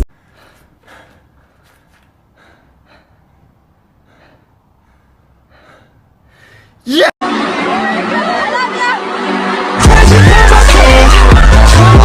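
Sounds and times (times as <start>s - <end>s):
person breathing softly: 0.2s - 6.8s.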